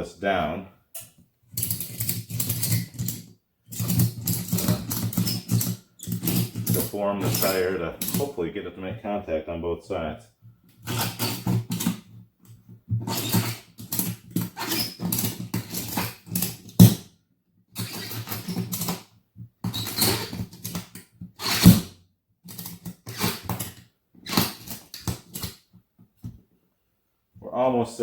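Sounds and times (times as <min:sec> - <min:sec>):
ratchet strap ratcheting: 0:01.0 - 0:08.2, 0:10.8 - 0:12.0, 0:13.1 - 0:17.0, 0:17.8 - 0:19.0, 0:19.7 - 0:21.9, 0:22.5 - 0:25.6.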